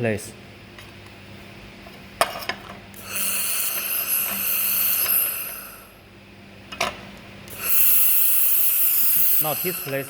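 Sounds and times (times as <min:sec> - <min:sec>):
laser welder hissing buzz: 0:03.0 - 0:06.1, 0:07.4 - 0:10.0.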